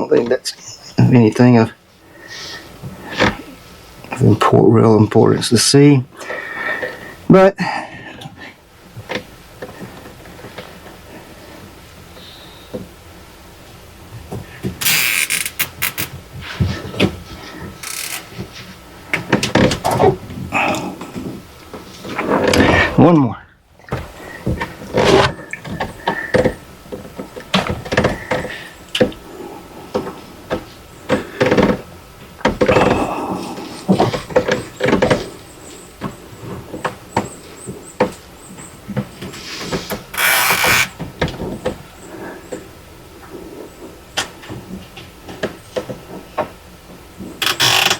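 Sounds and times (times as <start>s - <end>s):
hands clicking and knocking hoses: 14.6s - 17.1s
zip tie rasping tight: 14.8s - 16.2s, 17.8s - 18.3s, 40.2s - 41.0s.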